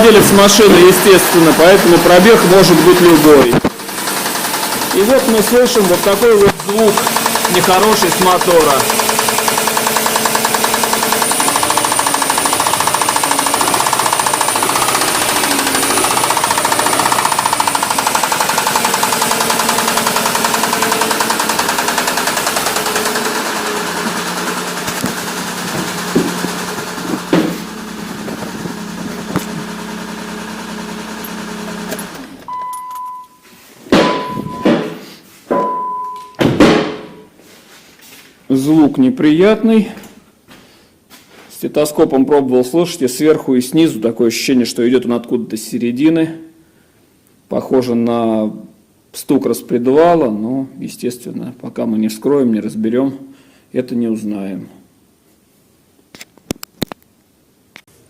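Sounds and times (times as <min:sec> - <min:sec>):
engine running with knock: 0:00.2 - 0:32.5
sharp thumps: 0:06.0 - 0:29.9, 0:33.9 - 0:35.7, 0:36.4 - 0:37.2
short beeps: 0:32.5 - 0:34.9, 0:35.5 - 0:36.4.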